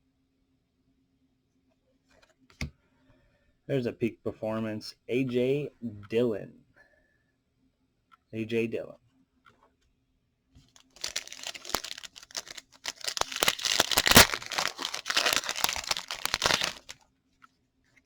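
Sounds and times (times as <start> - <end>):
foil wrapper tearing and crinkling: 11.0 - 17.0.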